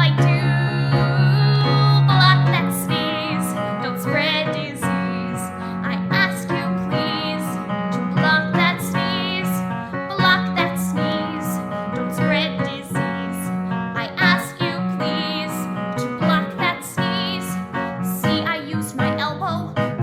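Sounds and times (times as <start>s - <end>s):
person singing with vibrato: 0.0s - 11.6s
instrumental backing: 0.0s - 20.0s.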